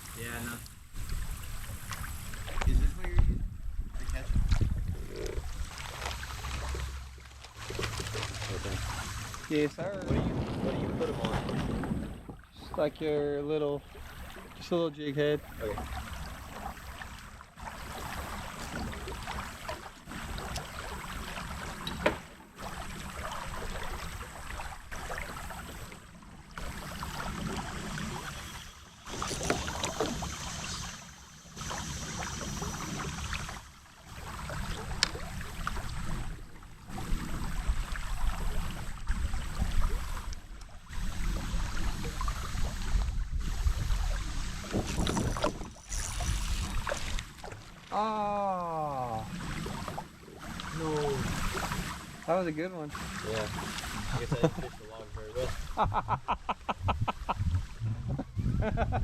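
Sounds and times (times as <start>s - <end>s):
water splashing around kayak: 0.0s - 59.0s
low rumble: 55.7s - 59.0s.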